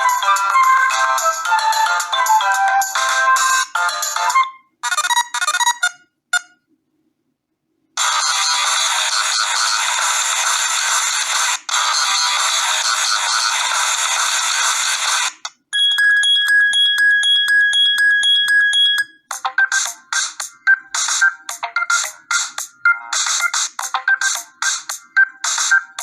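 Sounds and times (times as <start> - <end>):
choppy rhythmic electronic tune: 0.0 - 4.5, 17.7 - 26.0
dense electronic ringtone: 0.0 - 6.5, 8.0 - 10.4, 20.6 - 26.0.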